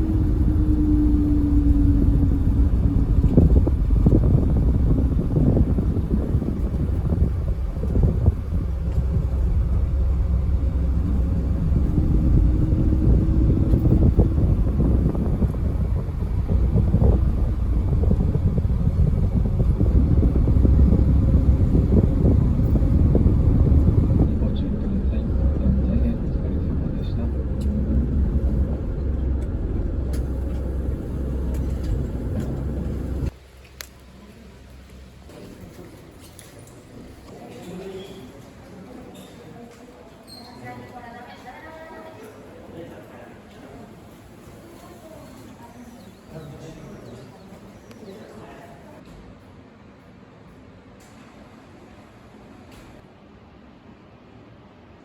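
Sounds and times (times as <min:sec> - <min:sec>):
moving vehicle rumble: 0:00.0 - 0:37.2.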